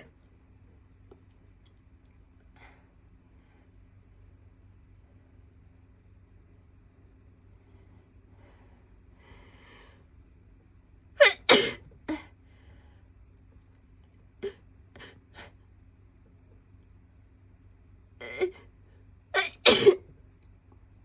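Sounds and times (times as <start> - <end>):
person sneezing: 19.4 - 20.0.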